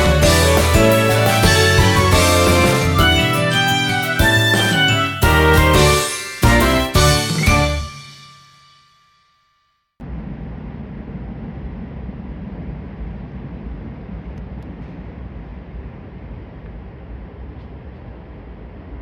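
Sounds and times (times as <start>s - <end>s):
train rumbling: 0.0s - 7.6s.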